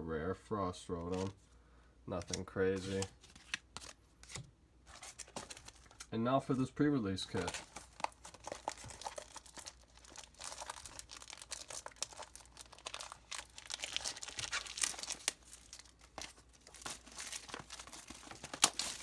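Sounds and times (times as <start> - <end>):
packaging torn and crinkled: 7.3 - 19.0.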